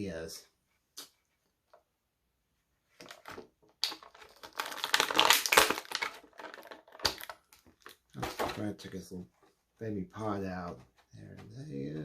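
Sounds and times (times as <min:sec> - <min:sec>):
plastic packaging crinkling: 0:03.0 - 0:08.0.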